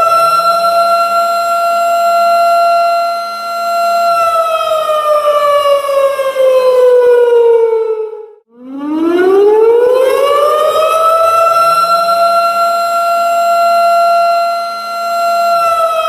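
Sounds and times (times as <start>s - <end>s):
warning siren wailing: 0.0s - 16.0s.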